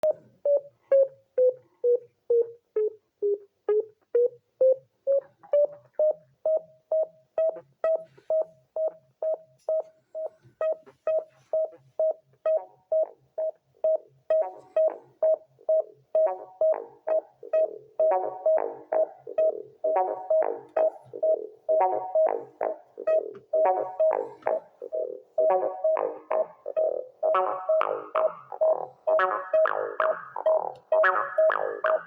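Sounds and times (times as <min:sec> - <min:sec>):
synthesizer repeating beep: 0:13.9 - 0:32.0.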